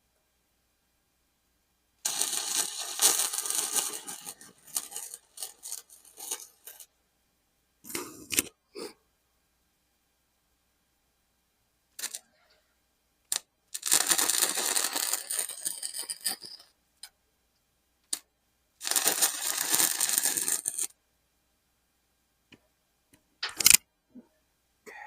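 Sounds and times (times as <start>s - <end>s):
welder arc crackling: 2.0s - 6.9s, 12.0s - 12.3s, 13.3s - 16.6s, 18.8s - 20.9s, 23.4s - 23.8s.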